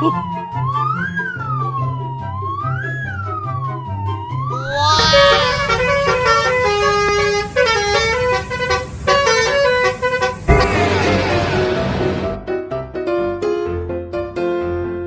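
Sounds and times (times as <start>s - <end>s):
multi-note bus horn melody: 4.8s - 12.4s
sudden rushing noise: 10.2s - 12.4s
low rumble: 10.5s - 12.4s.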